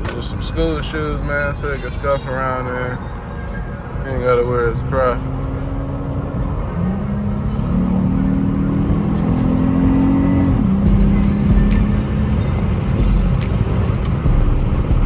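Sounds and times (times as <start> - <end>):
car engine and road rumble: 0.0 - 15.0
music with held low notes: 0.0 - 15.0
sharp ticks: 10.5 - 15.0.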